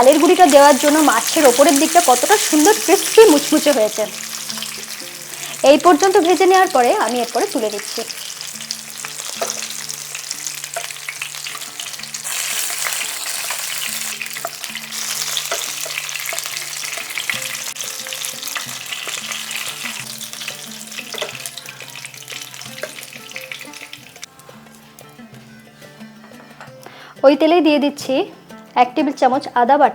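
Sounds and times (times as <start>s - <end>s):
fish sizzling in hot oil: 0.0s - 25.2s
spatula clicking and scraping pan: 7.8s - 23.9s.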